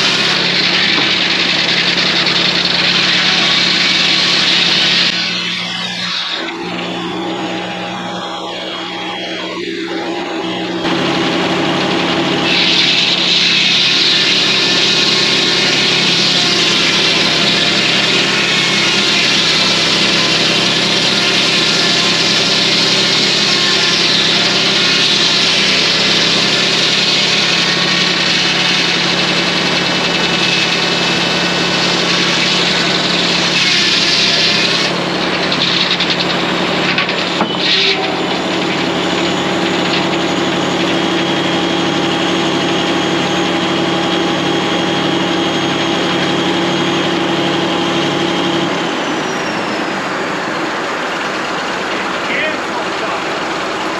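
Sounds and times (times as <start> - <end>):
circular saw cutting log: 0.0 - 53.9
diesel engine drone: 0.0 - 53.9.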